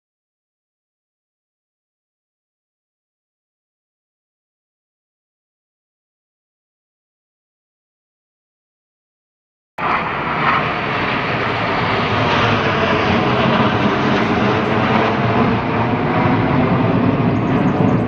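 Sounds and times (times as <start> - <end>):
jet aircraft flying past: 9.8 - 18.0.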